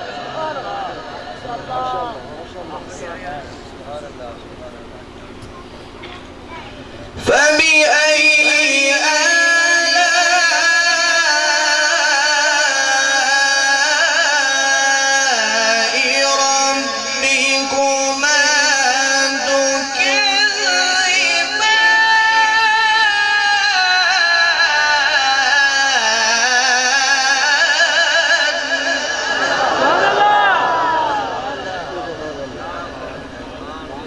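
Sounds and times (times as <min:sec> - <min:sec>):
man chanting melodically: 0:06.9 - 0:34.0.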